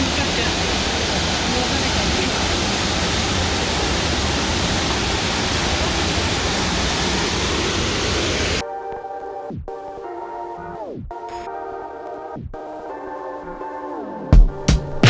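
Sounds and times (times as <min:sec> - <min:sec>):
waterfall roaring: 0:00.0 - 0:08.6
synthesizer music with gliding tones: 0:08.6 - 0:15.0.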